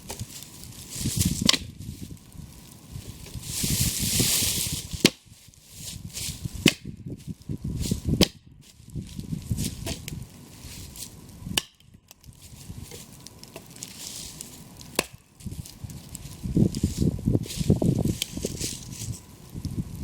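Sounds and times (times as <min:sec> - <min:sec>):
axe chopping wood: 0:01.4 - 0:01.7, 0:05.0 - 0:05.3, 0:06.6 - 0:06.9, 0:08.1 - 0:08.4, 0:11.6 - 0:12.0, 0:14.9 - 0:15.3.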